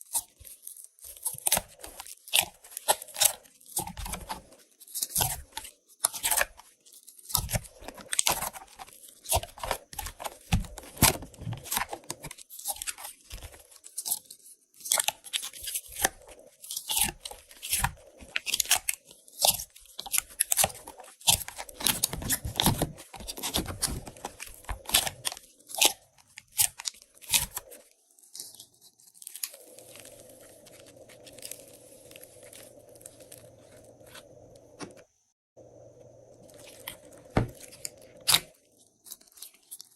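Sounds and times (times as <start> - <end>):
slime crackling and popping: 14.8 - 34.2
faint steady hum: 29.4 - 39.5.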